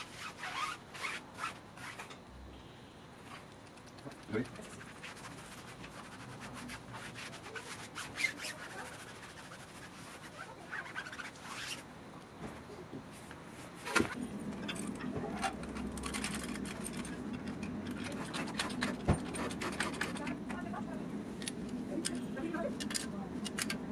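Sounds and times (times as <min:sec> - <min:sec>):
rubbing and scraping: 0:03.3 - 0:11.9, 0:13.6 - 0:20.8
low steady hum: 0:13.6 - 0:23.9.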